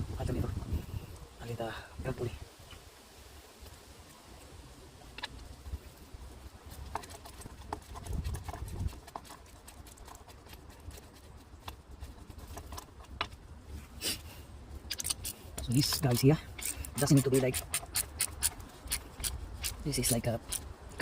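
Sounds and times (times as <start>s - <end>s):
hand tools clicking on bolts: 14.9s - 20.7s.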